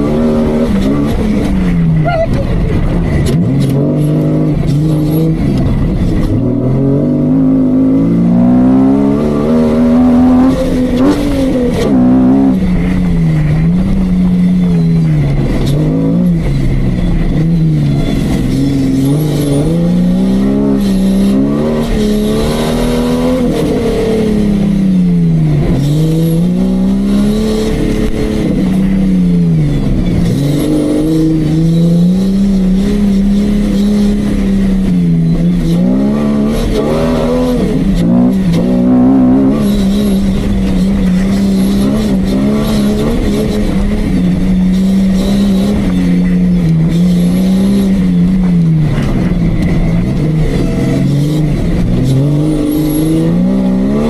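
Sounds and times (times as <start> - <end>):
engine revving: 0.0 - 54.0.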